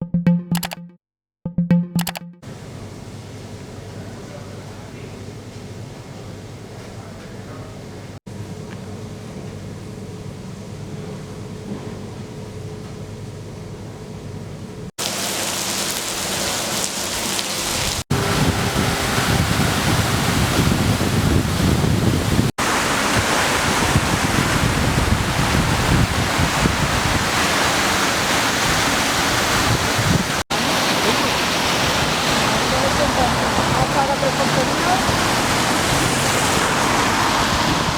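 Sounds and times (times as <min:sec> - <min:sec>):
heavy rain: 0:15.0 - 0:21.4, 0:22.1 - 0:37.9
rushing runoff water: 0:15.0 - 0:37.9.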